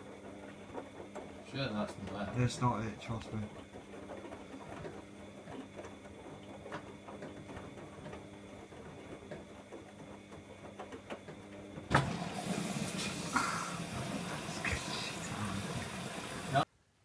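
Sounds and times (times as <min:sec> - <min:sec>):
washing machine running: 0:00.0 - 0:16.7
water running in: 0:11.9 - 0:16.7.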